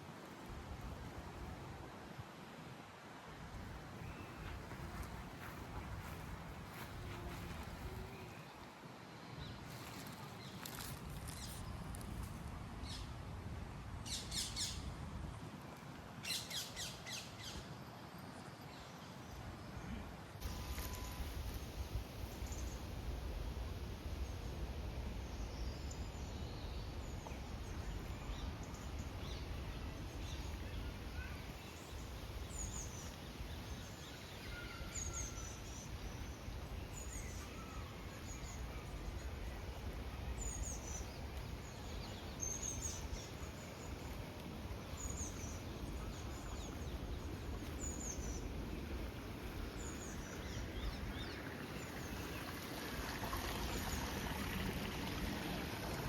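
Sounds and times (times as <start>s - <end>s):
outdoor background rush: 0.0s - 56.0s
fainter lower bird calls: 20.4s - 21.7s, 27.3s - 44.2s.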